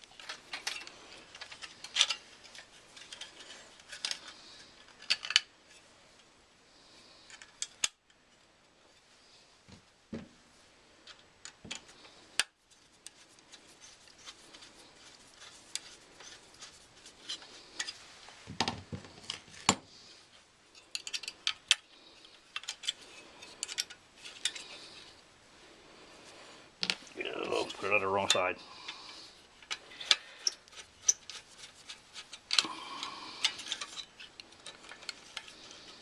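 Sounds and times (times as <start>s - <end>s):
sheet metal parts clicking: 0.0s - 5.8s, 20.7s - 25.1s, 26.8s - 36.0s.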